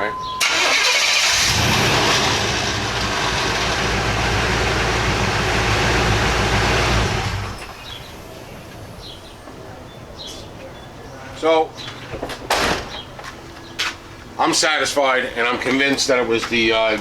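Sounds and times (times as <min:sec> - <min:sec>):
truck engine running: 0:00.0 - 0:09.4.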